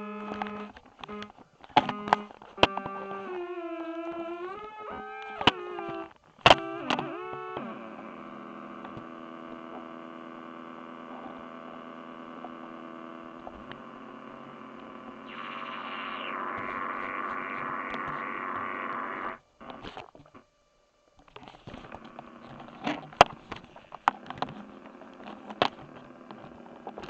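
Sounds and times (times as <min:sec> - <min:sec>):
electronic drone chord: 0:15.2 - 0:19.4
harsh pulsing hiss: 0:15.2 - 0:19.4.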